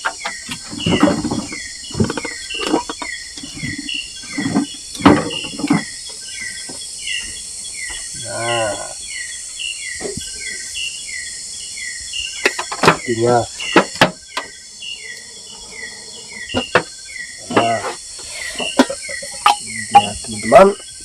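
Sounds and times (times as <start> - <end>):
forest insects chirping: 0.0 - 21.0
cooking utensils clattering: 17.5 - 20.6.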